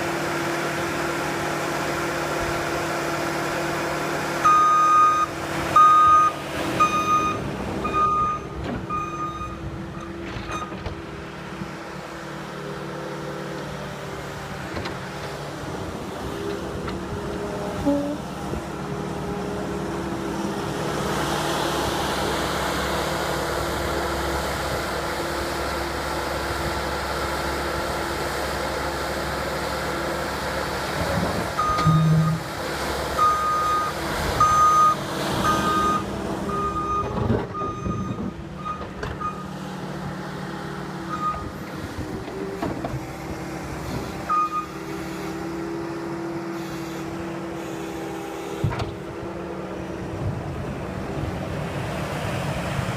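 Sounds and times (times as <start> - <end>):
skid steer engine running: 0.0 - 52.9
backup alarm beeping: 4.5 - 9.6, 31.6 - 32.5.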